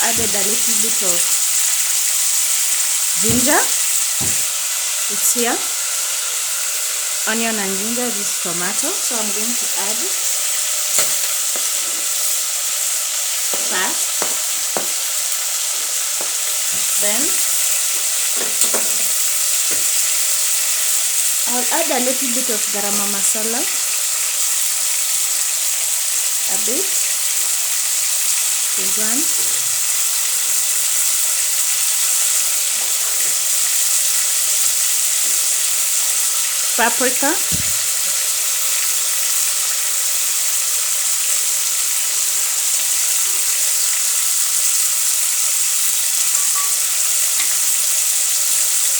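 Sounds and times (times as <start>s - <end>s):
onion frying in hot oil: 0.0s - 48.9s
spoon knocking against pan: 3.2s - 4.5s, 13.5s - 15.0s, 18.0s - 20.0s, 46.3s - 47.6s.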